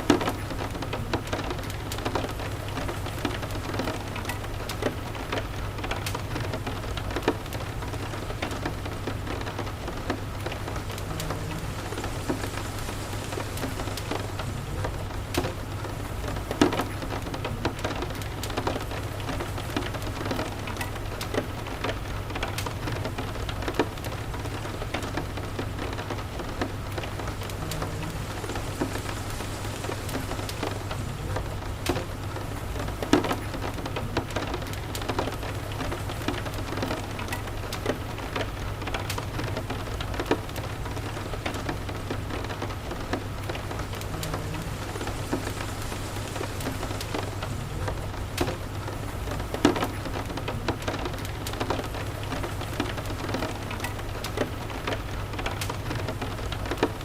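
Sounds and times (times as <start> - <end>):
steady rain hiss: 0.0 - 57.0
low steady rumble: 25.5 - 33.1.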